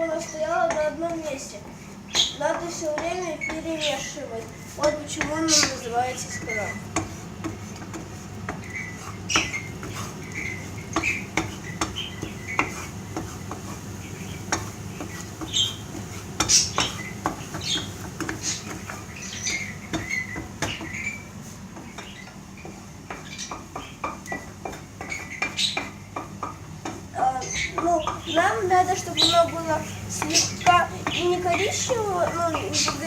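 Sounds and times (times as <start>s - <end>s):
spatula scraping frying pan: 4.6s - 22.0s.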